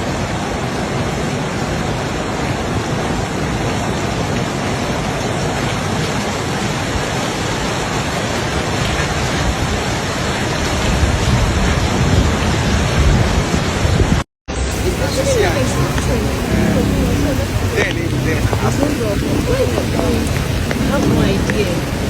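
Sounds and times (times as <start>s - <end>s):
rushing flood water: 0.0s - 22.0s.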